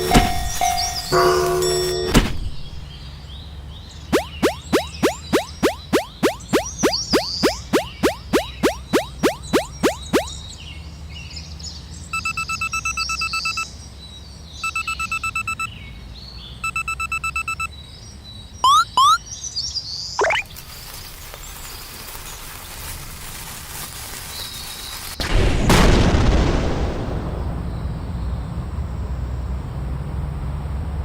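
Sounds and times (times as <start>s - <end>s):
birds chirping: 4.2s - 10.3s
rising whistle sweeps: 4.2s - 10.3s.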